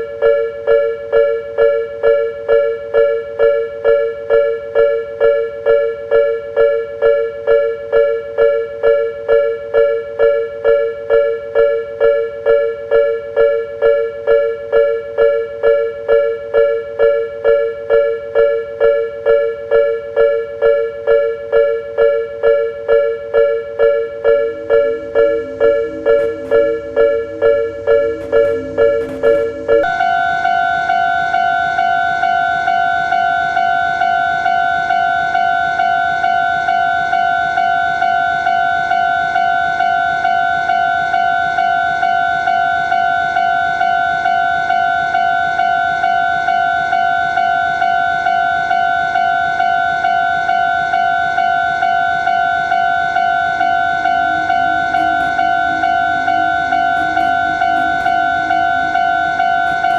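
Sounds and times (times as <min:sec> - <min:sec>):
level-crossing alarm dinging: 0:00.0 - 0:59.9
low steady tone: 0:21.6 - 0:31.4, 0:52.2 - 0:59.9.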